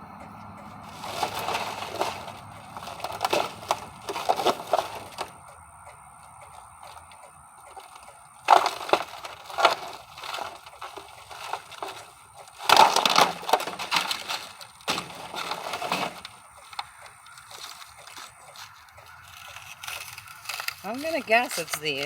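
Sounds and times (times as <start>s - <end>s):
plastic panels clattering: 0.9s - 5.4s, 7.7s - 18.3s.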